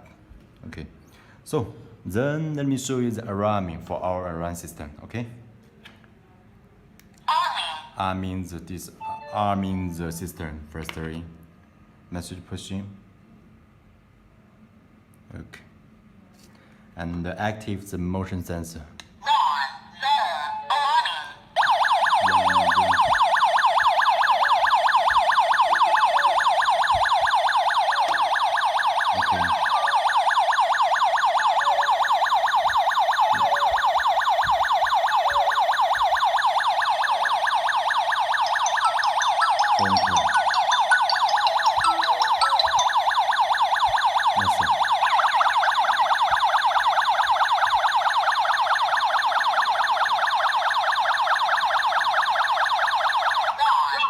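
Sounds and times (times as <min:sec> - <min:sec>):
alarm siren electronic warble: 0:21.6 - 0:53.6.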